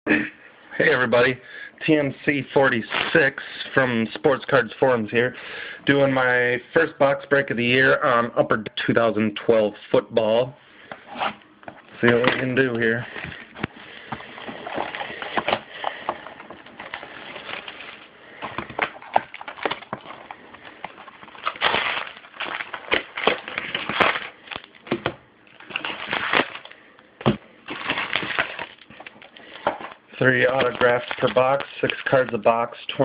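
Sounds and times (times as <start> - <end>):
plastic wrapper crinkling and tearing: 12.1 - 32.8.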